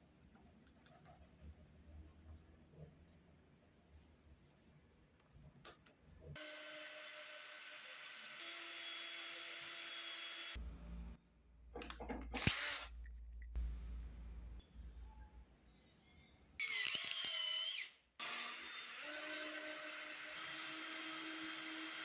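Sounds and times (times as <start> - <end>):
electric drill motor running: 6.4 - 10.6, 16.6 - 22.0.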